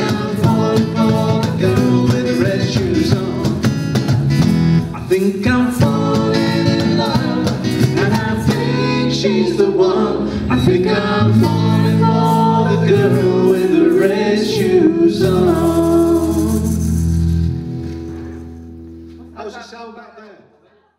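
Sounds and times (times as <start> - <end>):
person singing: 0.0 - 3.6, 4.9 - 17.0
bass: 0.0 - 19.6
guitar: 0.0 - 19.6.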